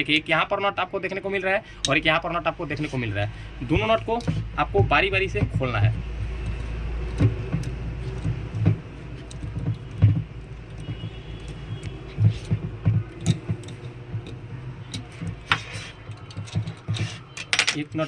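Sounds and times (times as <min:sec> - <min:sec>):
dull knocks of handled tool: 0:04.0 - 0:18.0.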